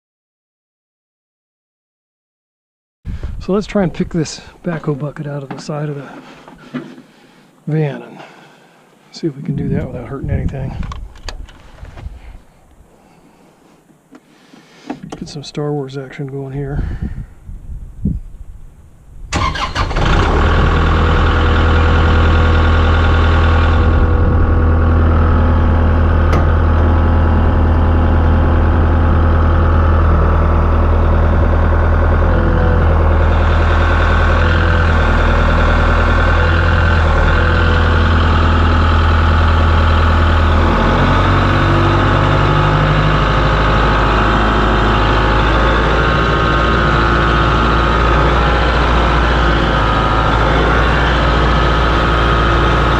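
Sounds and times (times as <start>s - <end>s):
truck engine starting and running: 19.2s - 52.9s.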